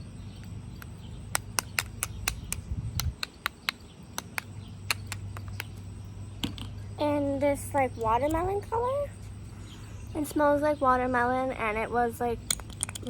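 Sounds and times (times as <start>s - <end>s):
steady low hum: 0.0s - 13.0s
plastic tube clicking: 0.8s - 5.7s.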